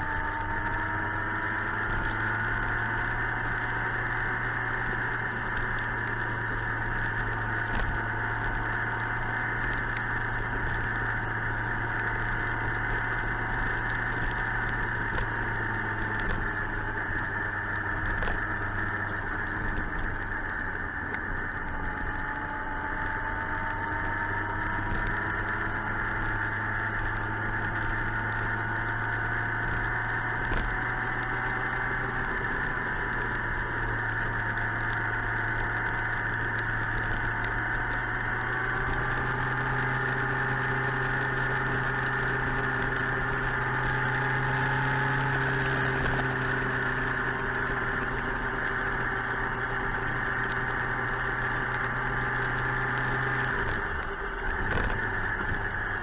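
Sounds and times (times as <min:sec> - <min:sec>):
motorcycle engine humming: 0:00.0 - 0:56.0
rain pattering on helmet: 0:00.3 - 0:56.0.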